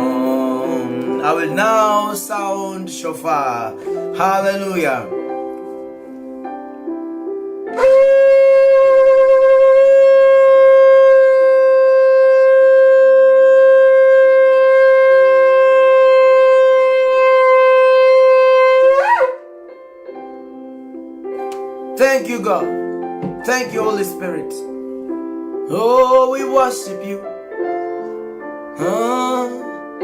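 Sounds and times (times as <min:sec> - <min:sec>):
soft instrumental notes: 0:00.0 - 0:11.0, 0:15.4 - 0:30.0
shofar blast: 0:07.7 - 0:19.5.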